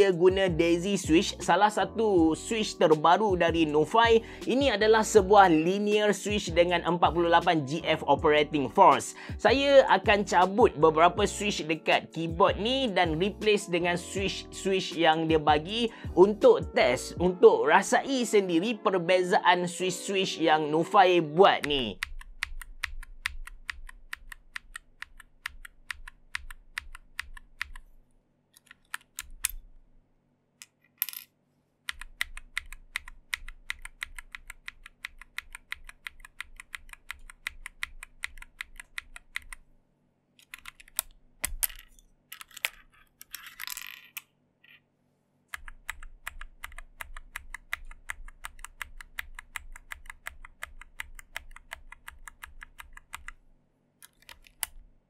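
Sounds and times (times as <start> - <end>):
mechanical keyboard typing: 21.6 - 27.8, 28.6 - 29.6, 31.9 - 39.6, 40.4 - 41.8, 45.6 - 53.4, 54.0 - 54.8.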